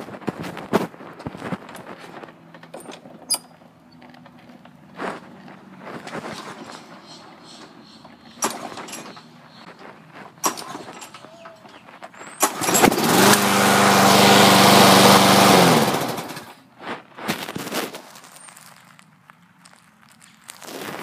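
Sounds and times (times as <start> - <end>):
lawn mower engine running: 1.2 - 16.6.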